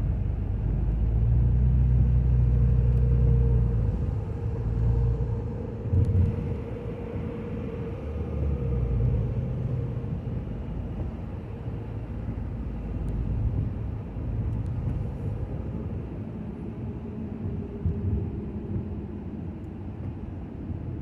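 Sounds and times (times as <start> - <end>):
car engine and tyres rumbling: 0.0 - 21.0
faint steady hum: 0.0 - 21.0.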